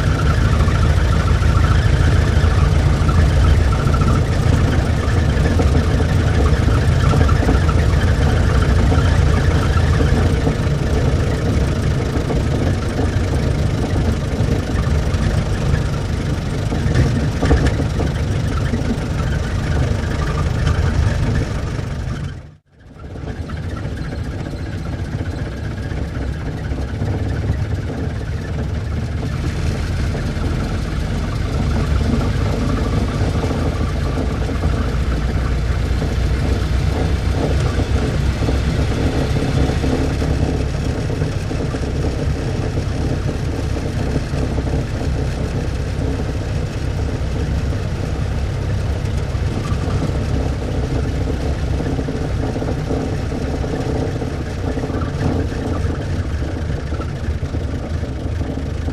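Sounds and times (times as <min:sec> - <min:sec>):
car engine running: 0:00.0 - 0:58.9.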